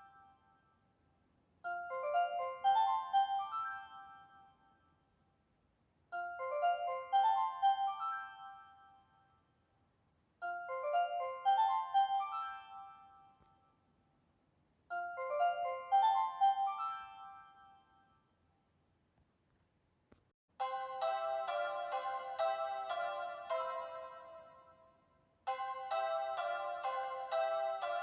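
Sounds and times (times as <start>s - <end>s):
bright bell-like chime: 0.0s - 1.0s, 1.7s - 5.2s, 10.4s - 14.0s, 14.9s - 18.5s, 20.6s - 28.0s.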